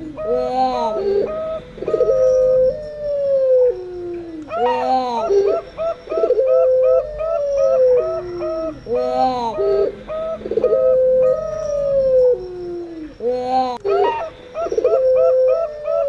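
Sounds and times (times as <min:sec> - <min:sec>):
doves cooing: 0:00.0 - 0:16.0.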